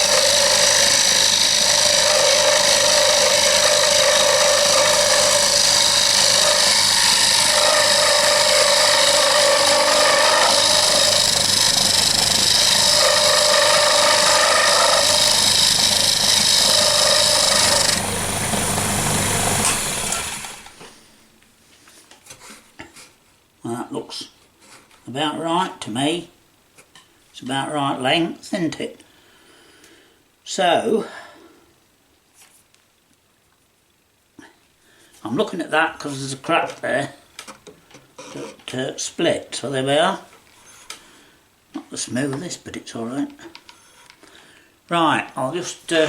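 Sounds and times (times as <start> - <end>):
lathe motor hum: 0.0 - 20.8
tool cutting spinning wood: 0.0 - 21.0.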